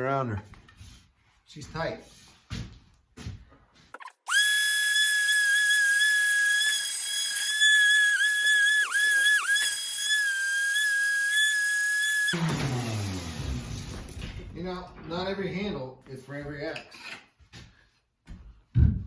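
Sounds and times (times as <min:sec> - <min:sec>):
high-pitched whistling tone: 0:04.0 - 0:12.4.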